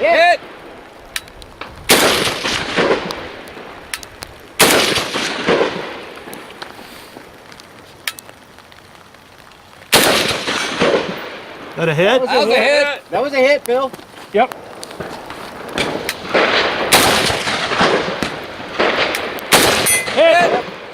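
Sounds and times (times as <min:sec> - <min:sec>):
rifle shots: 0:01.9 - 0:03.0, 0:04.6 - 0:06.0, 0:09.9 - 0:11.2, 0:15.8 - 0:20.9.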